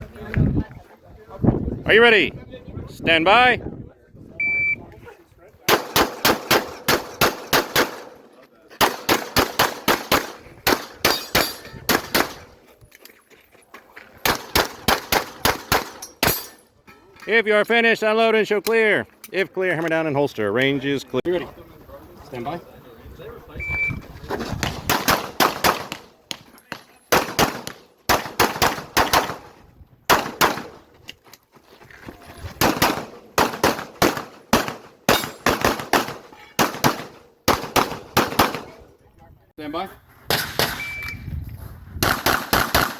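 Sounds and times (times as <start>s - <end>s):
pistol shots: 5.7s - 8.2s, 8.8s - 12.5s, 14.2s - 16.4s, 24.6s - 29.5s, 30.1s - 30.8s, 32.6s - 38.8s, 40.3s - 41.0s, 42.0s - 42.9s.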